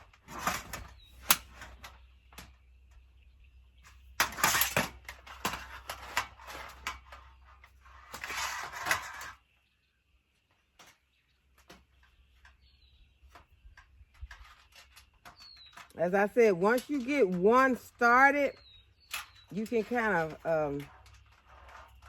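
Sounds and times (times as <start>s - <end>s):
panels scraping and rattling: 0.0s - 2.6s, 3.8s - 9.5s, 10.8s - 22.0s.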